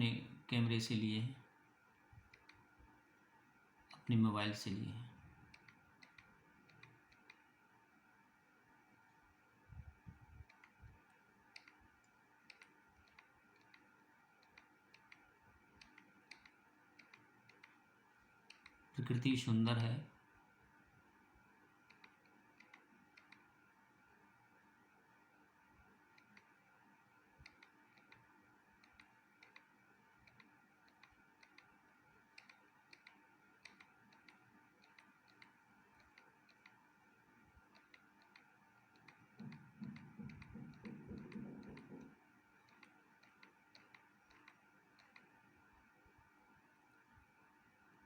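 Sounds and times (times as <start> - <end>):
steady hum: 0.0 - 48.0.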